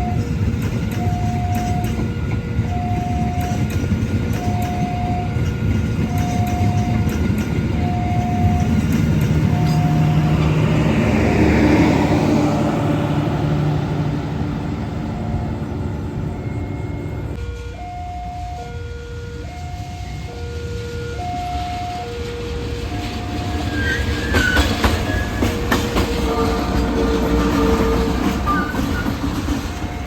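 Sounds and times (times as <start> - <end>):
train passing: 0.0 - 30.0
short tone beeps: 15.2 - 17.3.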